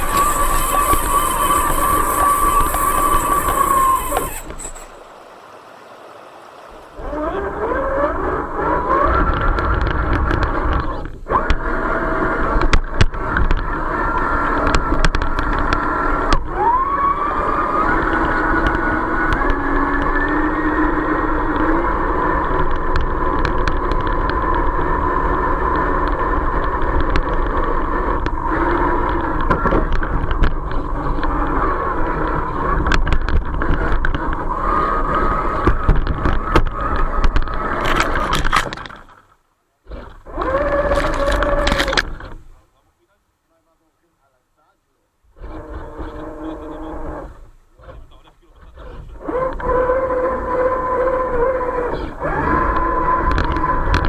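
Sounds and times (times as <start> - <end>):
toy truck electric motor whining: 0.0 - 39.2, 39.9 - 42.4, 48.8 - 54.0
sharp clicks and knocks: 35.1 - 39.2.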